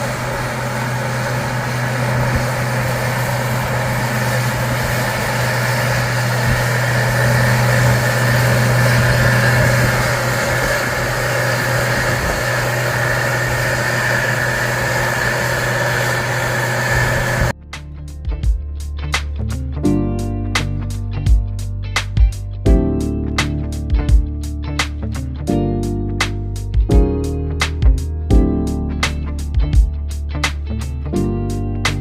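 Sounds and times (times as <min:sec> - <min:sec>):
harvest machinery engine drone: 0:00.0 - 0:17.6
high whine: 0:00.0 - 0:18.4.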